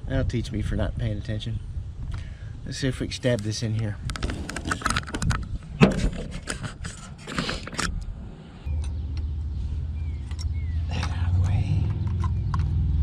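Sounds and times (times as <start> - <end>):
parts clicking and knocking: 3.3 - 8.1, 10.2 - 13.0.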